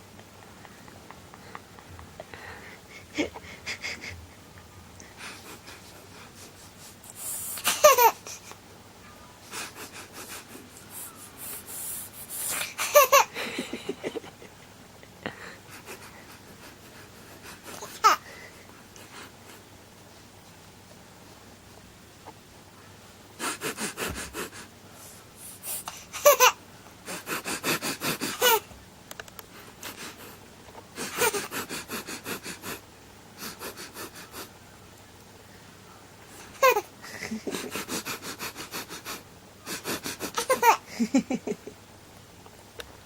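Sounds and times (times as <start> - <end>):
baby sniffling and huffing: 7.1 - 8.5, 9.5 - 13.2, 15.7 - 18.3, 23.4 - 28.6, 31.0 - 32.8, 37.5 - 40.9.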